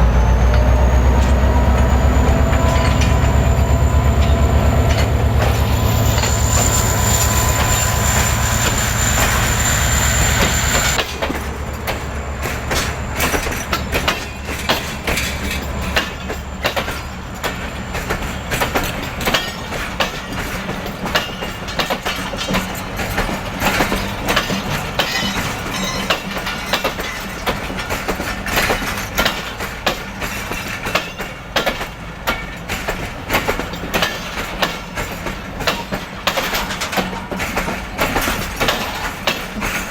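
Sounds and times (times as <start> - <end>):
locomotive high whine: 0.0 - 29.0
train wheels clickety-clack: 0.0 - 39.9.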